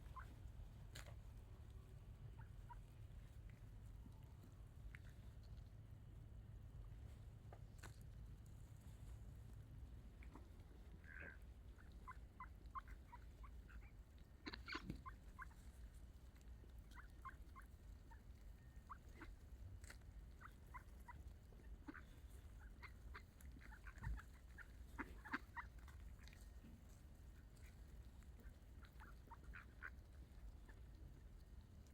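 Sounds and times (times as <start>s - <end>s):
low background rumble: 0.0s - 31.9s
ducks quacking: 10.2s - 15.6s, 20.3s - 26.5s, 28.4s - 30.9s.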